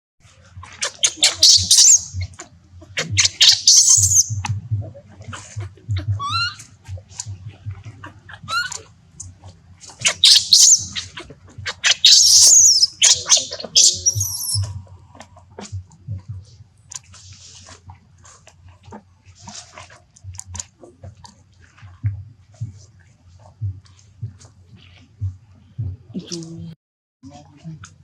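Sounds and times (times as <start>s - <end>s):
baby monkey screaming: 0.8s - 2.3s, 3.0s - 4.5s, 6.0s - 6.7s, 8.3s - 8.9s, 10.0s - 14.8s.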